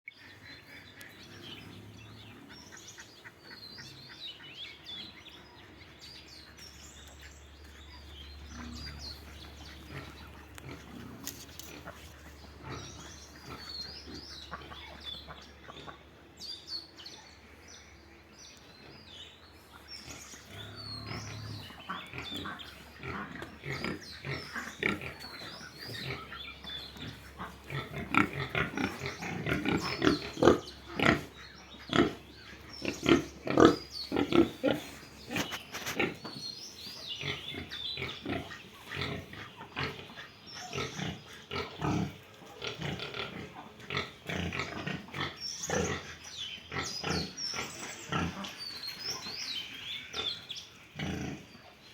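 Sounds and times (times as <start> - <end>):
pigs calling: 7.7 - 16.0, 19.7 - 49.4, 50.0 - 51.8.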